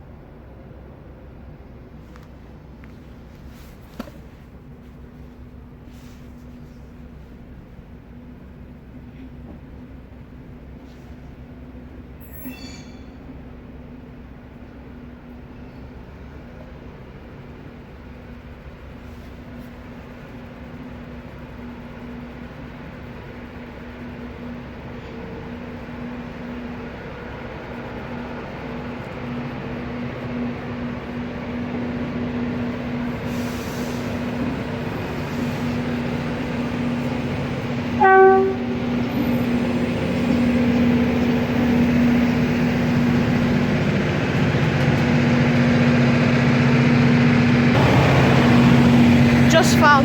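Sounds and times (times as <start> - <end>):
train engine drone: 0.0 - 50.0
short train horn toot: 38.0 - 39.0, 47.8 - 50.0.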